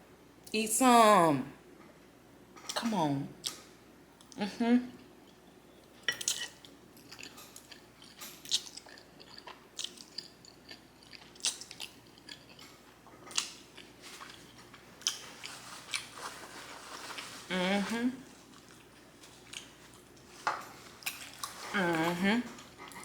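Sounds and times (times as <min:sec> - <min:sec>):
person chewing food: 0:05.0 - 0:17.5, 0:18.2 - 0:23.0.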